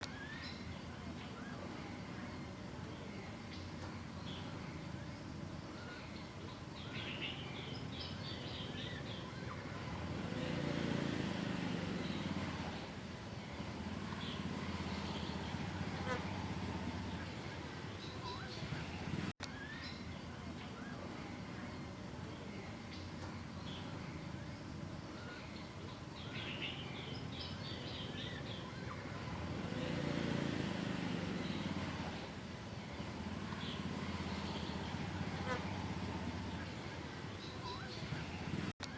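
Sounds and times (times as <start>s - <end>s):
background noise: 0.0s - 38.9s
birds chirping: 0.0s - 38.9s.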